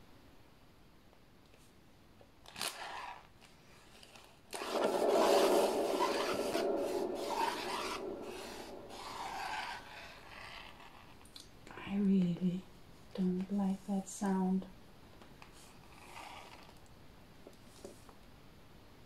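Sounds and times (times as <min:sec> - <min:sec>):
turntable bearing rasping: 0:04.6 - 0:10.5.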